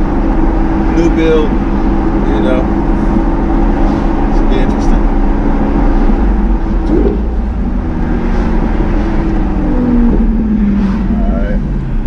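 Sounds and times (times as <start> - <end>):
car engine running at low speed: 0.0 - 12.0.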